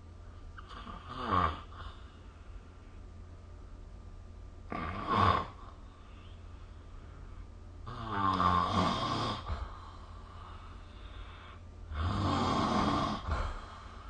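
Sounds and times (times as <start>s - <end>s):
steady low hum: 0.0s - 14.0s
person snoring: 0.6s - 2.1s, 4.7s - 5.8s, 7.8s - 9.9s, 10.5s - 14.0s.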